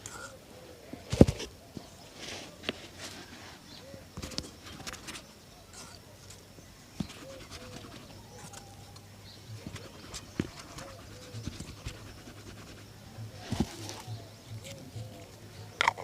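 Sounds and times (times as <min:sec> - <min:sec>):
pigeons cooing: 0:00.0 - 0:06.4, 0:07.0 - 0:16.0.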